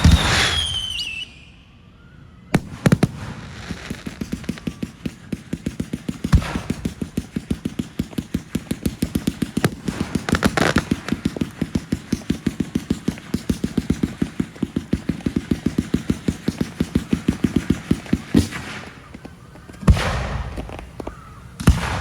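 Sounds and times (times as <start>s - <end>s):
loud firework bang: 0.0s - 1.0s, 19.8s - 22.0s
fireworks popping: 0.0s - 1.4s, 2.6s - 22.0s
fireworks crackling: 0.0s - 1.5s, 2.6s - 22.0s.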